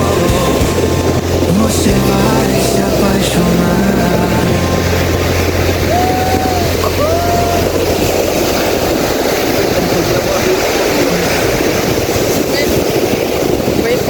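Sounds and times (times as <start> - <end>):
background music: 0.0 - 9.5
surf at a beach: 0.0 - 14.0
wind buffeting microphone: 0.0 - 14.0.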